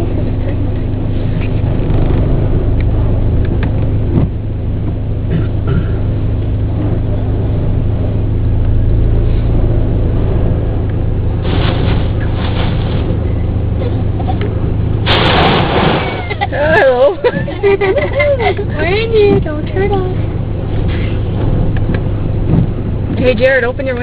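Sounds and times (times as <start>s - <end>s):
car engine idling: 0.0s - 24.0s.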